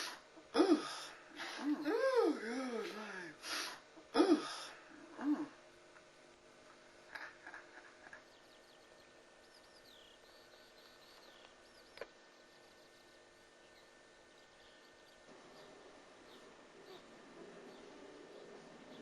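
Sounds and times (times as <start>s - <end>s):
small birds chirping: 7.9s - 19.0s.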